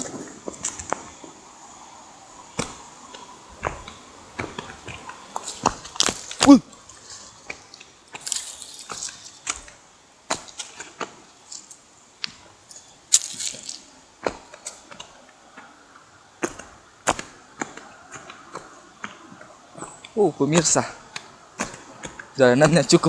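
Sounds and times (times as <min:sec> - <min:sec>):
footsteps crunching on trail: 0:02.6 - 0:15.0.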